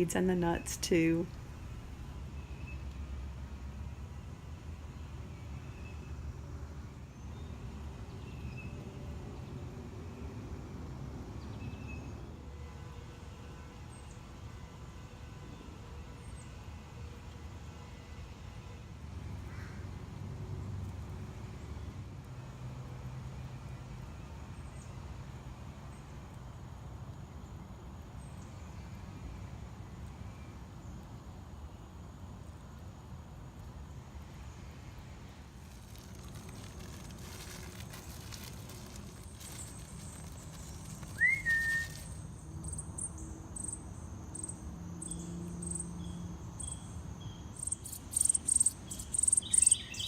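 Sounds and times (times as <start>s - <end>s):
low outdoor rumble: 0.0s - 5.4s, 31.9s - 45.4s
faint bird chirps: 47.6s - 50.0s.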